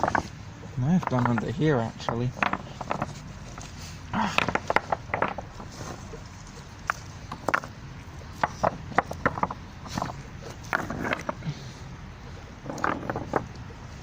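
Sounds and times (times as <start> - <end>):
rocks knocking and scraping: 0.0 - 11.6, 12.6 - 13.7.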